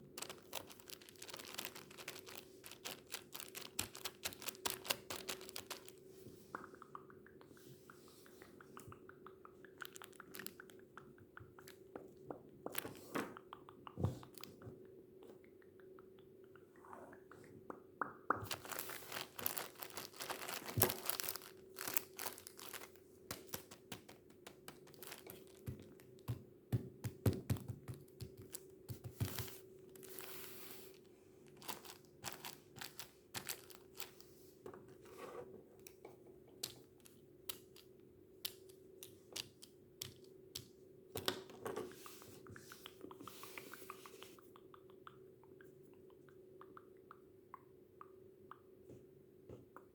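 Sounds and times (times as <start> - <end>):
tissues crinkling: 0.0 - 6.7, 9.7 - 11.8, 18.4 - 34.3
faint steady hum: 0.0 - 49.9.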